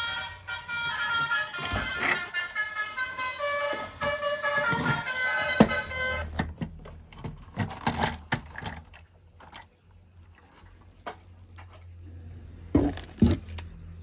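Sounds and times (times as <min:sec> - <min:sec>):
short electronic melody: 0:00.0 - 0:06.4
plastic toy vehicles clicking: 0:00.0 - 0:09.8.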